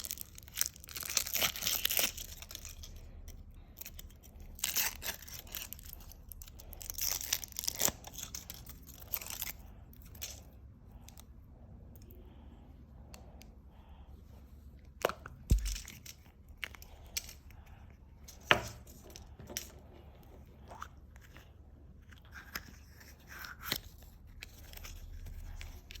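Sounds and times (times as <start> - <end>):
candy egg wrapping crunching: 0.0 - 11.3, 15.4 - 19.3, 21.9 - 26.0.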